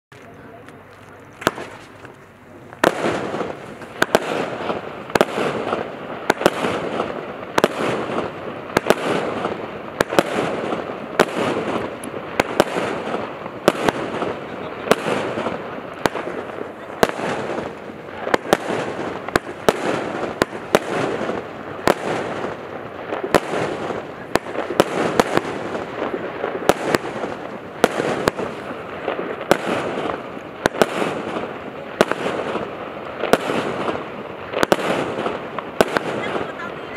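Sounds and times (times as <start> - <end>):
firework bangs: 0.1 - 36.9
firework crackling: 0.1 - 36.9.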